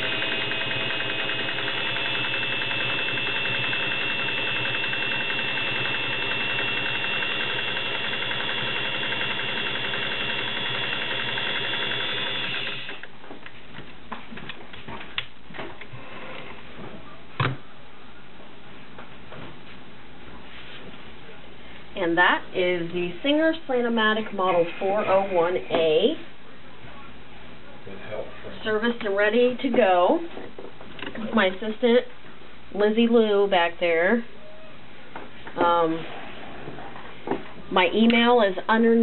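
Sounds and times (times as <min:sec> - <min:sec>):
sewing machine whining: 0:00.0 - 0:13.1.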